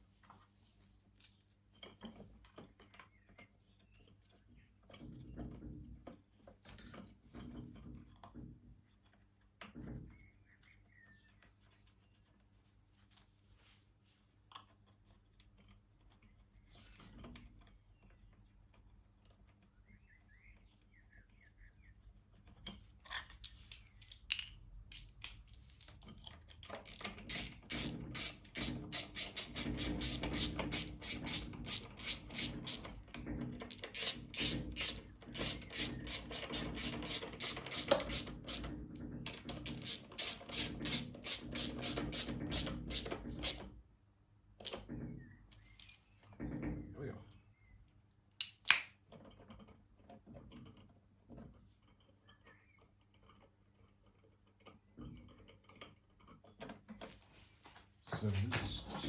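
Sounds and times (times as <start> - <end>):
hand tools clicking on metal parts: 23.0 - 33.0, 33.6 - 38.7, 39.3 - 43.6.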